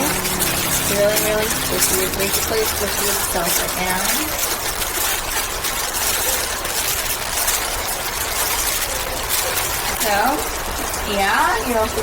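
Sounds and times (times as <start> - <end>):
low machine rumble: 0.0 - 4.4.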